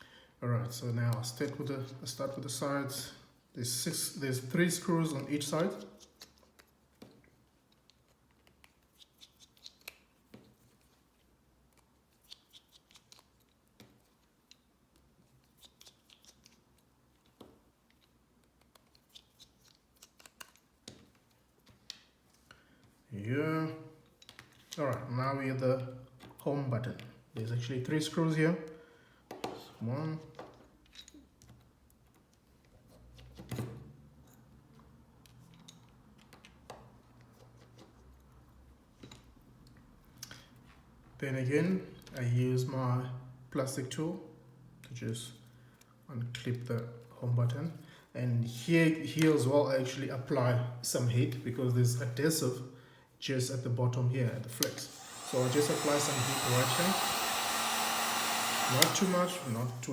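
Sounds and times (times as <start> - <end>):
small screwdriver clicking on screws: 54.6 - 59.8.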